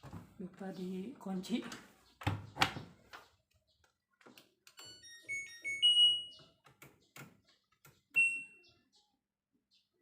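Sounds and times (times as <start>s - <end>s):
electronic beeping melody: 4.8s - 6.6s, 8.2s - 8.8s.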